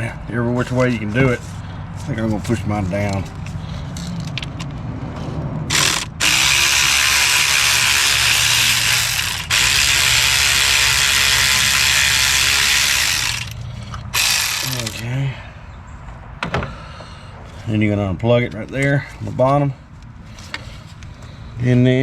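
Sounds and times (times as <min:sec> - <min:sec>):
ratchet wrench spinning: 0:05.7 - 0:15.0.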